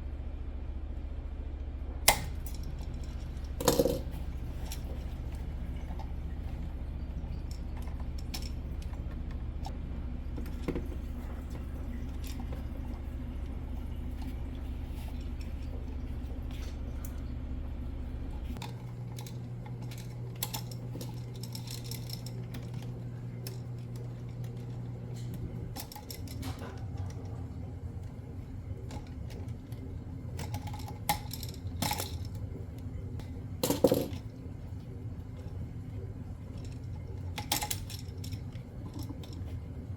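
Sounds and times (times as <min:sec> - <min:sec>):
steady low hum: 0:00.0 - 0:39.9
tools clattering: 0:02.1 - 0:06.7, 0:07.3 - 0:09.7, 0:30.4 - 0:32.4, 0:33.6 - 0:34.3, 0:36.6 - 0:39.6.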